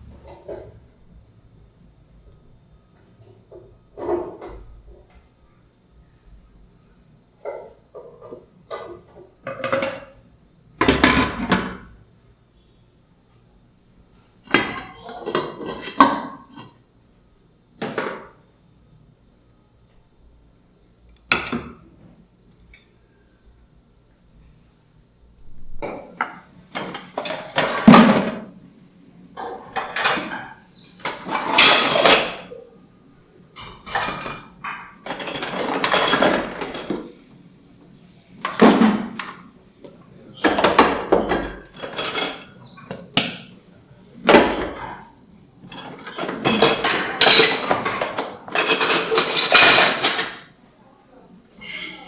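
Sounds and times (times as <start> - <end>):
utensils clattering against dishes: 7.4 - 10.2, 10.8 - 11.9, 14.5 - 16.8, 25.9 - 28.5, 29.4 - 32.7, 33.6 - 37.2, 38.4 - 39.5, 40.4 - 43.6, 44.2 - 50.6.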